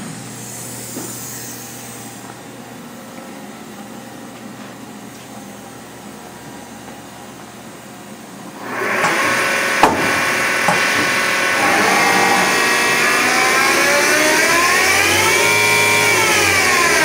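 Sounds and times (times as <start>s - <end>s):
lathe whine: 8.6s - 17.0s.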